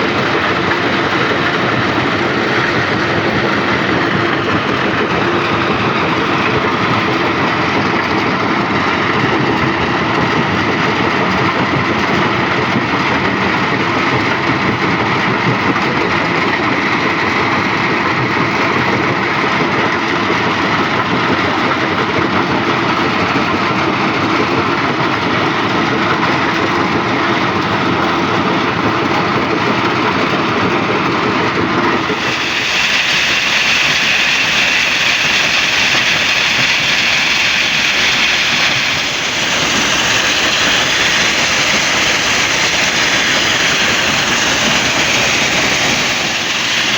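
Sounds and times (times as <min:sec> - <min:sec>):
stone crusher machine running: 0:00.0 - 0:46.9.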